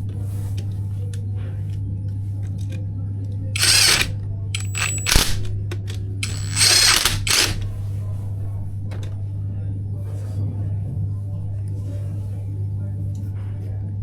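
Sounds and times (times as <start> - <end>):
electric screwdriver whirring: 3.6 - 5.5, 6.2 - 7.7
sharp click: 3.6 - 7.7.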